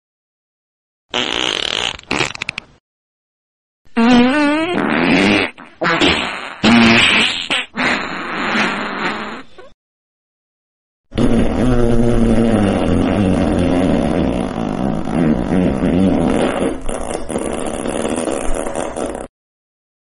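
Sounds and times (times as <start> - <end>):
long fart sound: 1.1 - 2.6, 3.9 - 9.6, 11.1 - 19.3.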